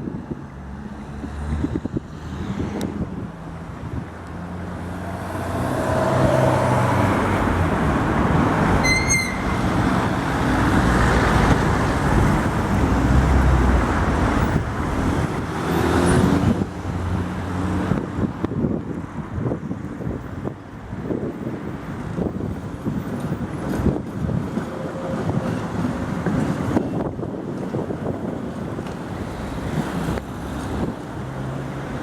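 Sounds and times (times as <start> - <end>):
street traffic: 0.0 - 32.0
tram rumbling past: 2.9 - 18.4, 21.6 - 32.0
short high-pitched beep: 8.8 - 9.6.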